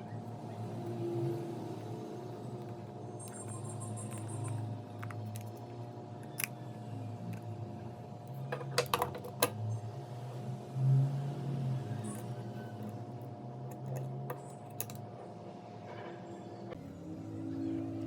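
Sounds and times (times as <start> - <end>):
hand tools clicking on phone parts: 1.8 - 6.7, 8.3 - 9.6, 13.7 - 15.0.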